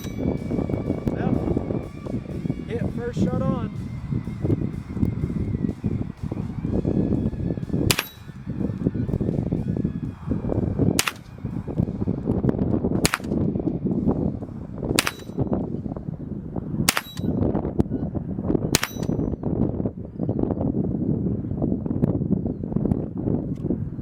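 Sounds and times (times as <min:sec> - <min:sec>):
rifle shots: 0:11.0 - 0:11.2.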